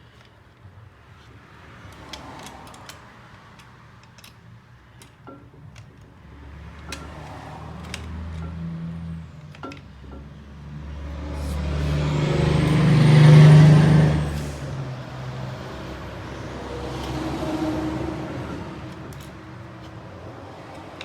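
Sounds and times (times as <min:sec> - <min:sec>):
vehicles driving past: 0:00.1 - 0:21.0.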